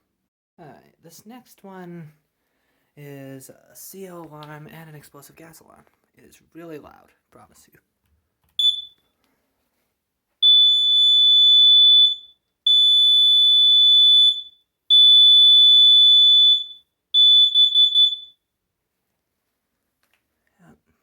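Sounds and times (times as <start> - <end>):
gas alarm beeping: 8.6 - 9.0, 10.4 - 18.4.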